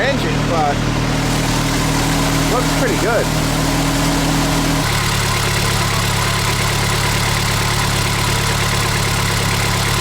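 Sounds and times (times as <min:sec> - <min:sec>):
truck engine idling: 0:00.0 - 0:10.0.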